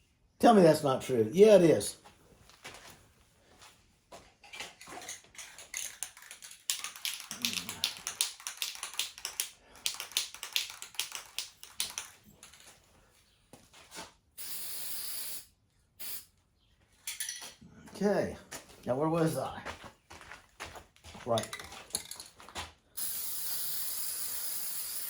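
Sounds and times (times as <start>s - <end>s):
spray can ball rattling: 5.4s - 12.7s, 21.4s - 22.3s, 23.0s - 25.0s
spray can hissing: 14.4s - 16.3s, 23.0s - 25.0s.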